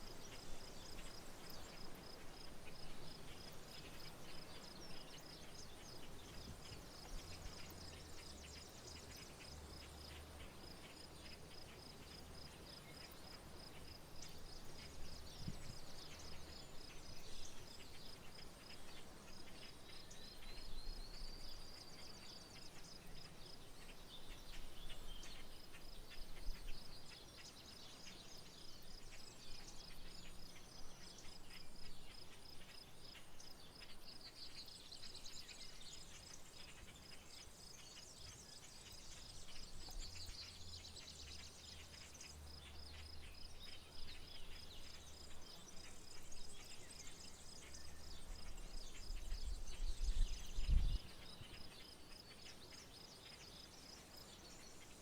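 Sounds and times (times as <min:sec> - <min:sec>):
cricket chirping: 0:00.0 - 0:55.0
low background noise: 0:00.0 - 0:55.0.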